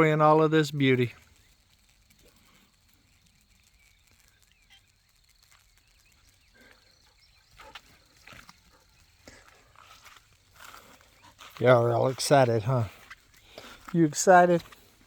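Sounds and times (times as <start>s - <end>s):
faint dog noises: 6.5s - 10.0s.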